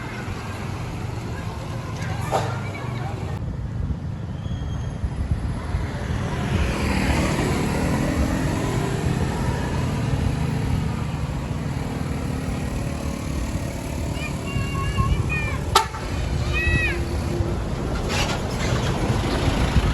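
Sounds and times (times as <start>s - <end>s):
road noise: 0.0s - 19.9s
bus engine droning: 5.4s - 19.9s.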